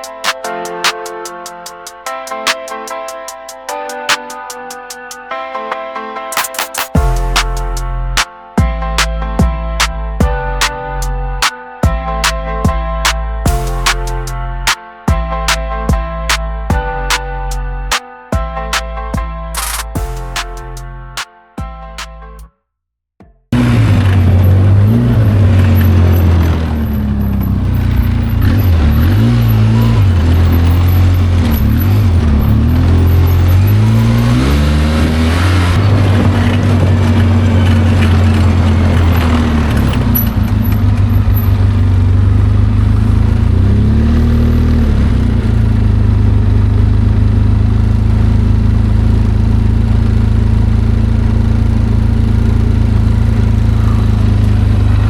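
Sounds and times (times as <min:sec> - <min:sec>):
atv engine running: 0:23.6 - 0:55.0.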